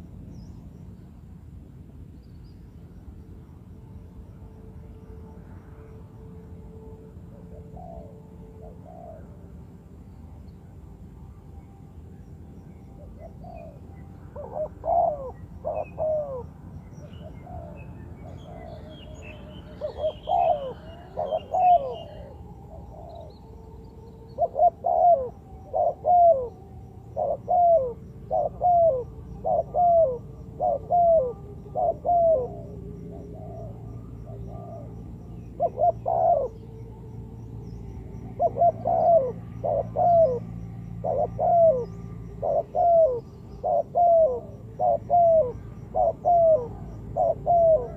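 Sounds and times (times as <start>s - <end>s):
steady low hum: 0.0s - 47.9s
dove cooing: 7.3s - 9.5s, 12.8s - 47.9s.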